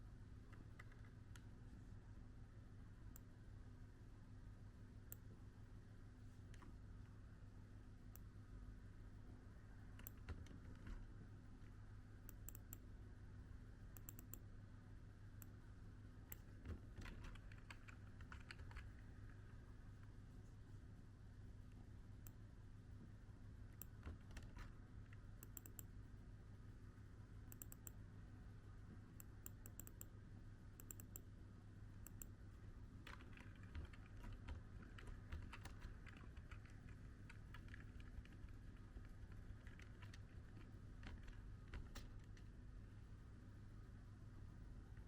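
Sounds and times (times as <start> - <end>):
faint clicks and taps: 9.9 - 11.7, 16.3 - 20.2, 32.0 - 42.6.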